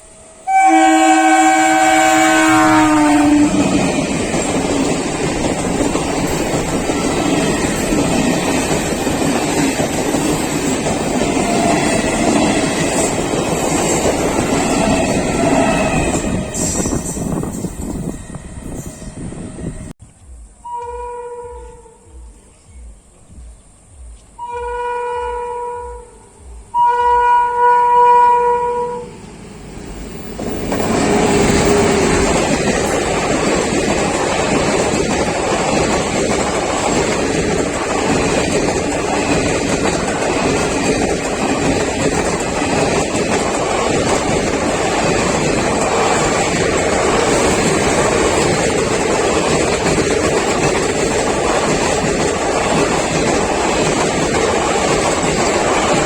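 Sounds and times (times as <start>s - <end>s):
train passing at speed: 0.0s - 20.5s, 21.4s - 56.0s
train horn blasts: 0.1s - 4.0s, 14.5s - 17.4s, 20.6s - 22.3s, 24.4s - 29.2s.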